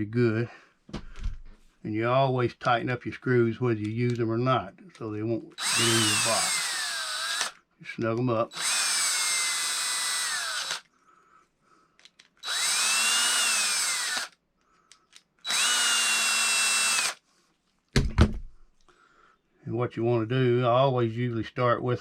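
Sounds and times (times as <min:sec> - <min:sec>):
power drill motor whine: 0:05.6 - 0:07.6, 0:08.5 - 0:10.9, 0:12.4 - 0:14.4, 0:15.4 - 0:17.2.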